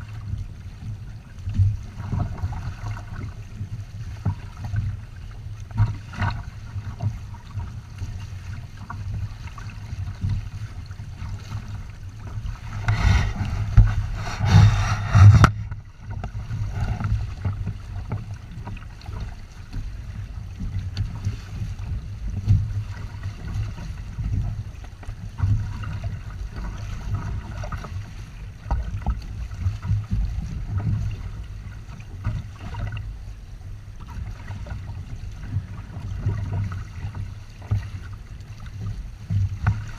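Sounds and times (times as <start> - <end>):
wind rumble: 10.0 - 19.1
faint hiss of water: 12.2 - 19.8.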